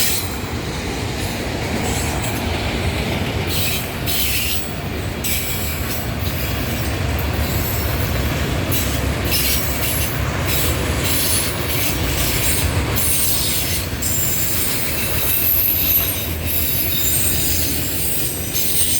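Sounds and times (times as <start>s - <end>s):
train wheels rumbling on rail: 0.0s - 18.9s
high-pitched wheel squeal: 8.7s - 18.9s.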